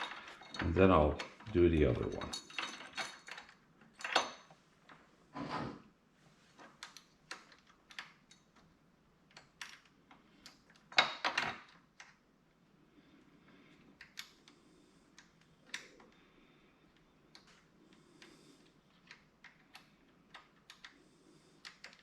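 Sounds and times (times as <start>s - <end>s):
metal bolts and nuts clattering: 0.0s - 4.5s.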